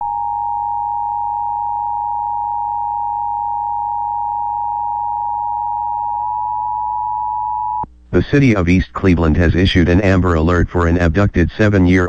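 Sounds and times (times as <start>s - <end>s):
two-tone electronic alert tone: 0.0s - 7.8s.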